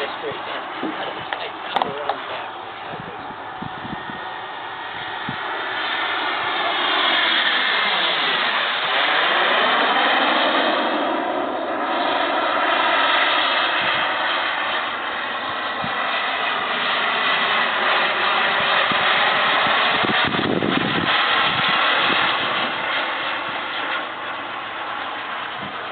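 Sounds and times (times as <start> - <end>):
jet engine whining: 0.0 - 25.9.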